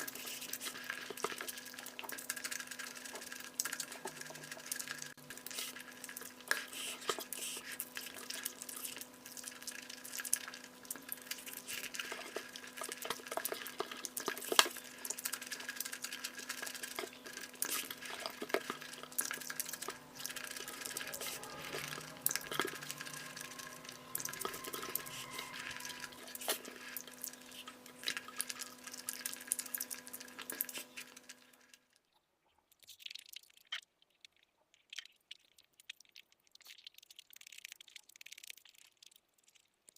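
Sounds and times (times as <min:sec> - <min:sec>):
steady electrical hum: 0:00.0 - 0:31.8
wet squishing of food eaten: 0:00.0 - 0:31.9, 0:32.5 - 0:39.9.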